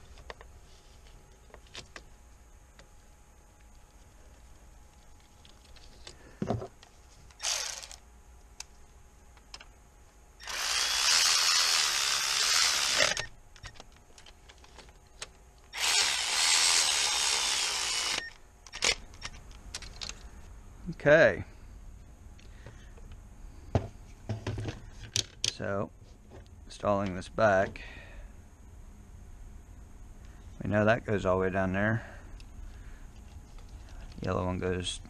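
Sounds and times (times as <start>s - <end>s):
handheld power tool running: 7.4s - 8.0s, 10.4s - 13.3s, 15.7s - 19.0s.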